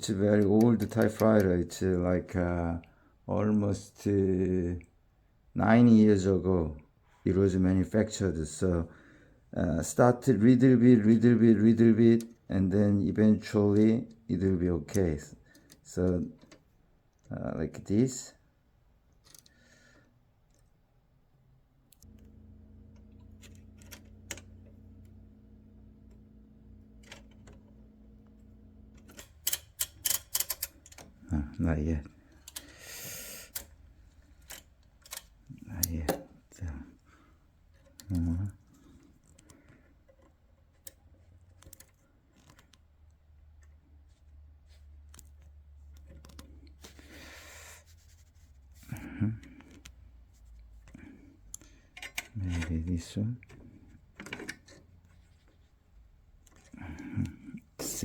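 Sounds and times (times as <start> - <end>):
typewriter mechanism clicks: 0.0 - 1.6, 29.0 - 31.2, 32.3 - 32.8, 33.4 - 36.3, 41.6 - 42.7
steady low hum: 21.8 - 43.2, 43.8 - 58.0.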